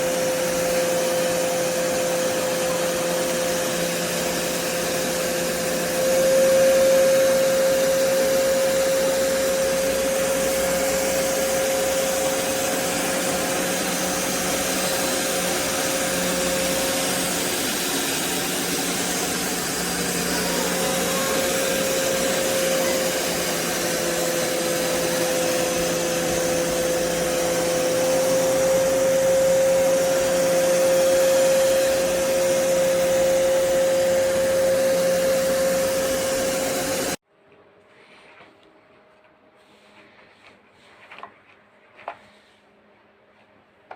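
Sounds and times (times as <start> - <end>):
vacuum cleaner motor whining: 0.0 - 37.2.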